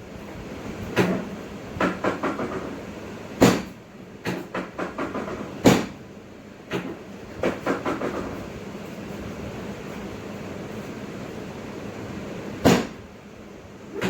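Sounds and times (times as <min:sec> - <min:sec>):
knocks and thumps on a table: 0:01.0 - 0:02.8, 0:04.3 - 0:05.9, 0:06.7 - 0:08.4.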